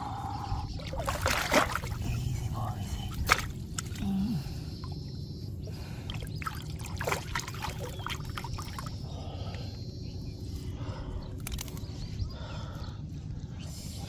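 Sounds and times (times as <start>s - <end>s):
shallow water sloshing: 0.7s - 4.2s, 6.1s - 9.0s
small sharp splashes: 0.8s - 2.0s, 3.2s - 4.0s, 6.2s - 8.9s.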